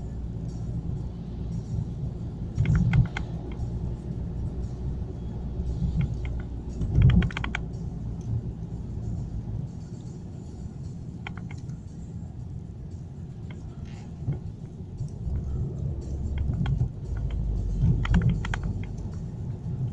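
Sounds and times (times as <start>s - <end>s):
car engine and road rumble: 0.0s - 19.9s
rapid clicking or rattling: 2.5s - 3.8s, 5.7s - 8.4s, 11.1s - 12.5s, 13.4s - 19.9s.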